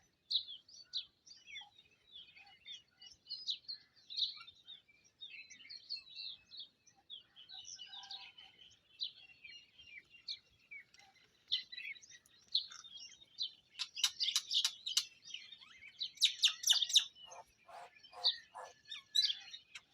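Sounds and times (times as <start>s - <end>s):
small birds chirping: 0.0s - 19.9s
lower fuller bird calls: 13.0s - 19.9s.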